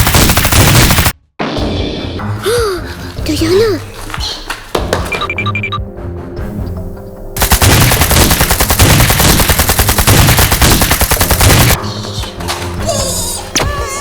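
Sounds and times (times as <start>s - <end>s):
rapid automatic gunfire: 0.0s - 1.2s, 7.4s - 11.8s
background music: 1.4s - 14.0s.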